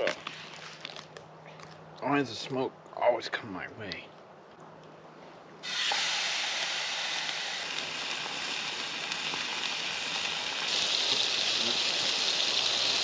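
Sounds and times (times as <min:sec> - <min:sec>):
patties sizzling: 0:05.6 - 0:13.0.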